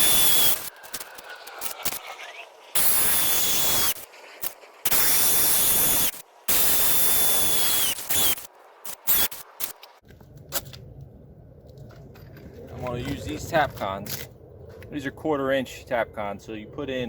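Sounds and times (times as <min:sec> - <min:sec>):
hammer drill boring into concrete: 0:00.0 - 0:02.1, 0:02.8 - 0:09.7.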